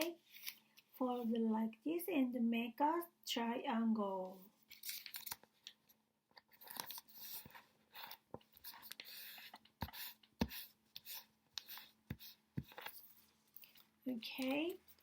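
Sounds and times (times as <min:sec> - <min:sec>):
paper crinkling and rustling: 0:04.6 - 0:05.8, 0:06.4 - 0:09.5.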